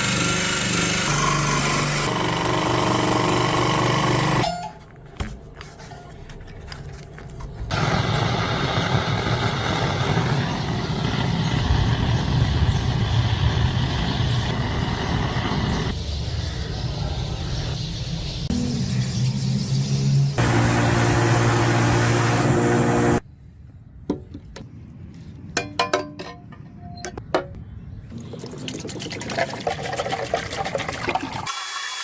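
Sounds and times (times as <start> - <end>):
power tool running: 0.0 - 4.5, 7.7 - 12.4, 20.4 - 23.2, 31.5 - 32.0
low rumbling machine: 6.8 - 23.9.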